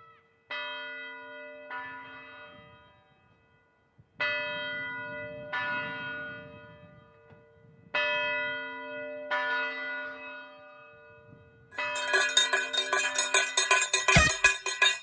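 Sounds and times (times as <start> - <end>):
rapid metallic clanging: 11.8 - 15.0.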